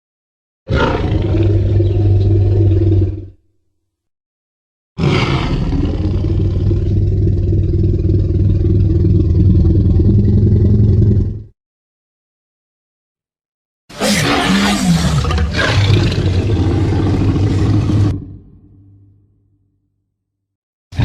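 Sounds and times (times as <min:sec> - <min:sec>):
dinosaur roar: 0:00.7 - 0:03.4, 0:05.0 - 0:11.5, 0:13.9 - 0:19.0.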